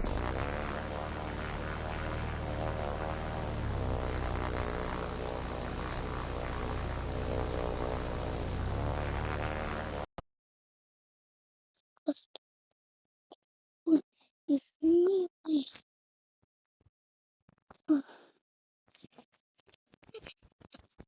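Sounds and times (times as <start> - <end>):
music with sustained chords: 0.0 - 10.0
steady low bass: 0.0 - 10.1.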